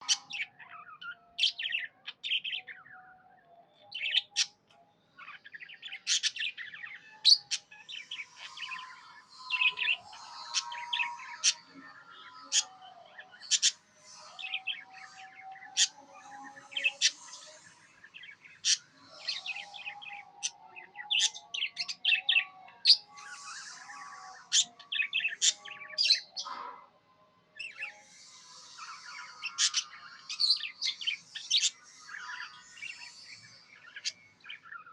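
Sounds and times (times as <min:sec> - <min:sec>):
budgerigar chirping and warbling: 0:28.8 - 0:33.1.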